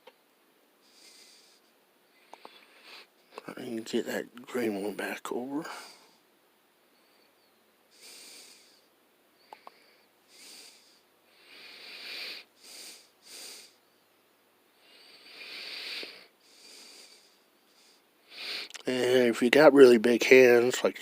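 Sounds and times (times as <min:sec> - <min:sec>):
man breathing through nose: 0:00.8 - 0:03.4, 0:07.9 - 0:13.8, 0:14.8 - 0:18.8
faint clicks: 0:01.6 - 0:03.5, 0:09.4 - 0:09.8, 0:18.6 - 0:18.9.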